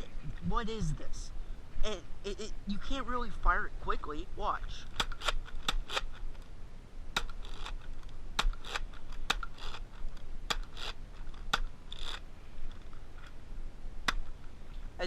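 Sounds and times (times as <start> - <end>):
toy dart pistol snapping: 7.2 - 7.4.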